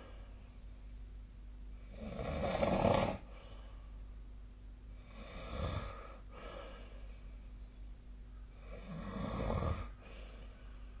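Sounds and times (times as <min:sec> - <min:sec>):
person snoring: 0:01.9 - 0:03.3, 0:05.0 - 0:06.6, 0:08.6 - 0:10.0.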